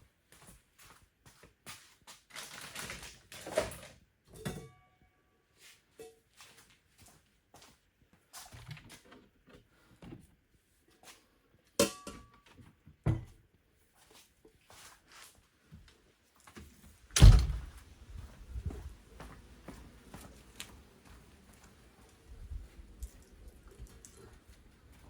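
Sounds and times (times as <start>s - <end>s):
heavy thunk: 17.2s - 17.8s.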